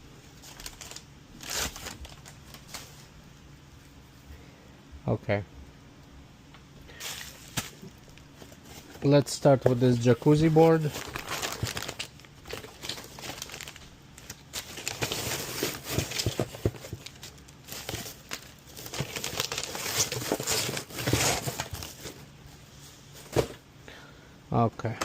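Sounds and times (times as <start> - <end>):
plastic packaging crinkling: 0.4 - 3.1, 6.9 - 22.2.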